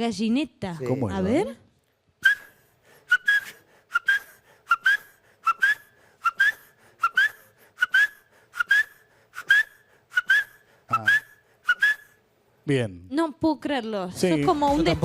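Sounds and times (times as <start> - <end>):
man whistling bird call: 2.2 - 12.2.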